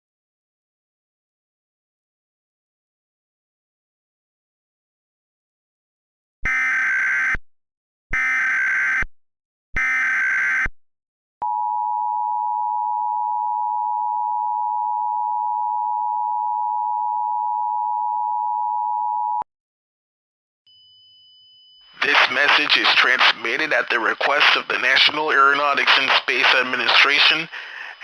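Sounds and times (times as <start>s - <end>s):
data tone bursts: 21.8s - 25.1s.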